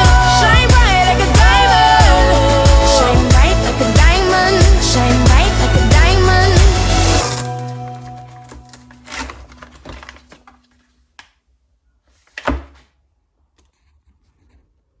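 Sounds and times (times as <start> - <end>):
background music: 0.0 - 10.2
handling clicks and knocks: 7.8 - 10.9.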